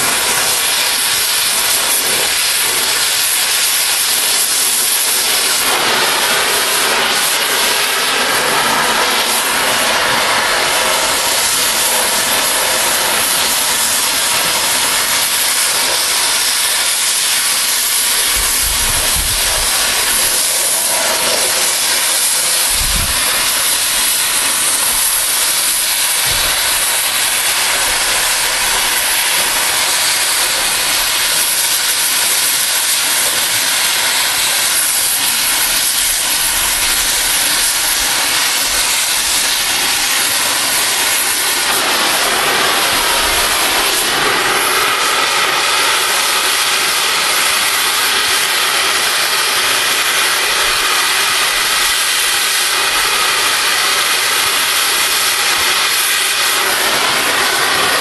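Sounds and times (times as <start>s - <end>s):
cutting torch hissing: 0.0s - 58.0s.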